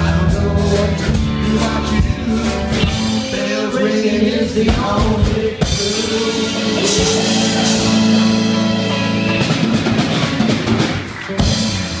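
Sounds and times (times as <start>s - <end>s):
rock band playing: 0.0s - 12.0s.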